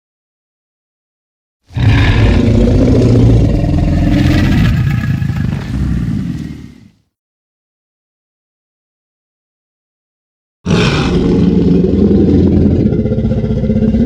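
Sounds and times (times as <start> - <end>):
dinosaur roar: 1.7 - 7.0, 10.7 - 14.0.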